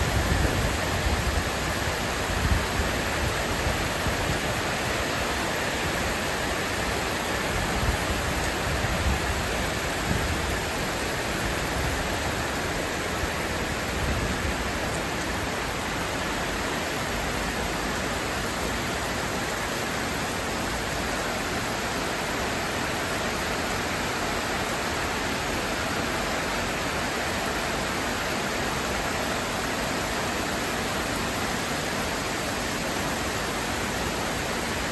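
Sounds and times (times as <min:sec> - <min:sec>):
heavy rain falling: 0:00.0 - 0:34.9.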